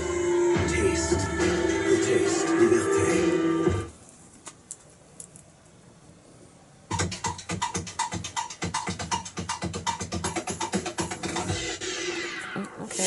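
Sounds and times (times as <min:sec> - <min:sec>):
fast even drum beat: 0:06.9 - 0:11.8.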